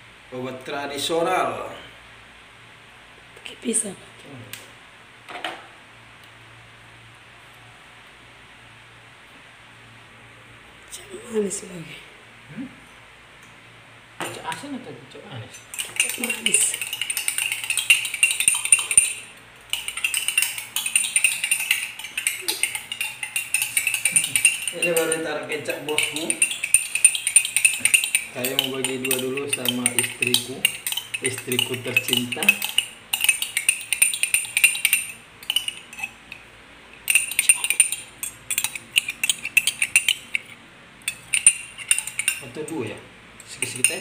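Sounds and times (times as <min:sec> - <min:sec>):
spoon clinking in a glass: 0:15.7 - 0:42.8, 0:43.5 - 0:44.0.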